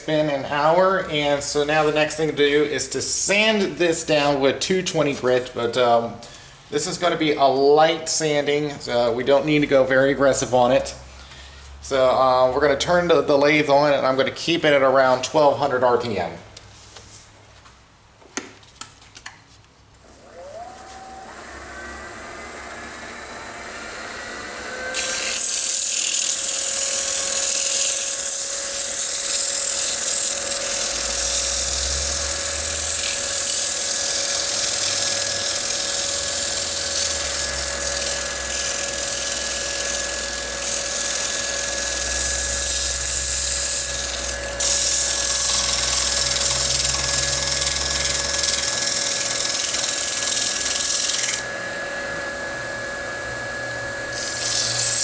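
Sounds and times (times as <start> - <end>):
lathe motor whine: 20.1 - 55.0.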